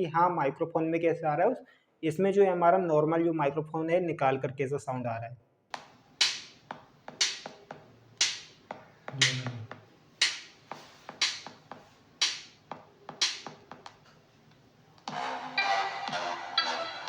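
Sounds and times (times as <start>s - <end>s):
electronic music track: 15.0s - 17.0s.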